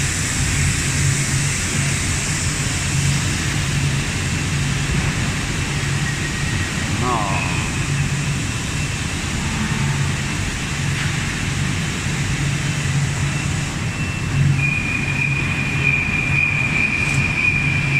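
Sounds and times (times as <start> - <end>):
high-pitched whine: 0.0 - 17.9
industrial machinery running: 0.0 - 17.9
low pulsing hum: 4.0 - 13.0.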